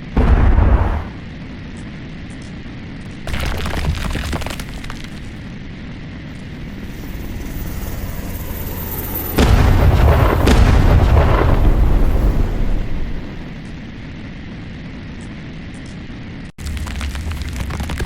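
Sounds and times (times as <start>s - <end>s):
crash of crumbling debris: 0.0s - 1.4s, 3.3s - 5.4s, 6.6s - 13.9s, 16.6s - 18.0s
low rumble: 0.0s - 1.6s, 6.2s - 14.1s.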